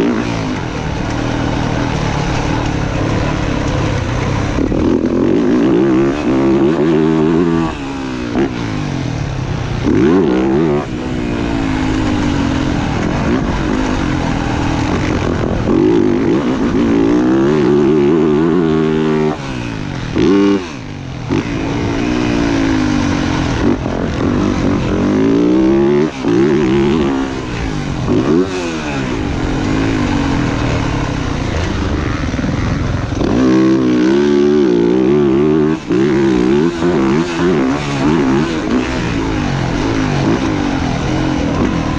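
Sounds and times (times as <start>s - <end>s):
dirt bike engine revving: 0.0s - 41.9s
steady rush of noise: 0.0s - 41.9s.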